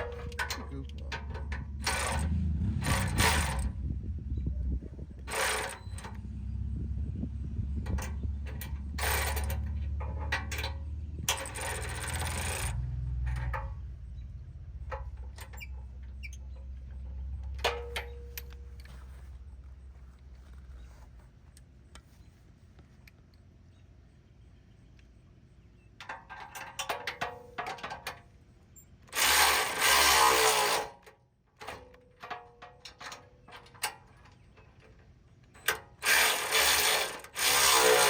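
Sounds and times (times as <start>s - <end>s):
low rumble: 0.0s - 5.3s, 6.0s - 20.8s
ratchet clicking: 10.4s - 13.6s, 29.1s - 30.9s, 35.6s - 38.0s
short noisy bursts: 36.0s - 38.0s.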